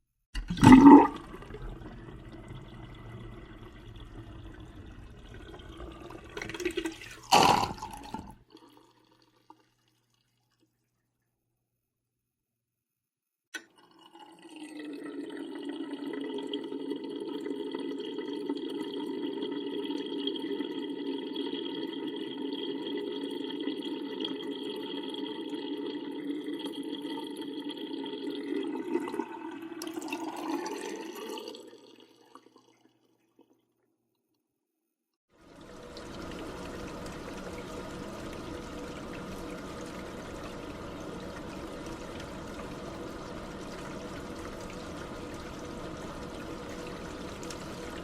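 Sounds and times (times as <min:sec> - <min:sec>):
water running: 0:00.4 - 0:09.7, 0:35.4 - 0:48.0.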